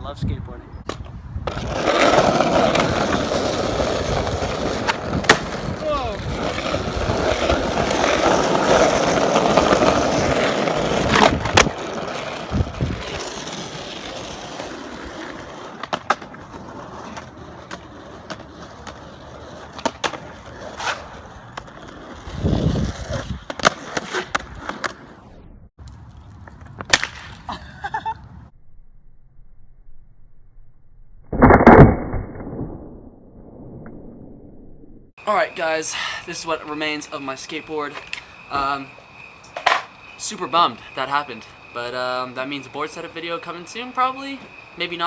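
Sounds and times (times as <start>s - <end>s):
skateboard wheels rolling on pavement: 0.8s - 28.5s, 35.2s - 45.0s
skateboard clacks: 0.9s - 25.0s, 39.5s - 39.9s.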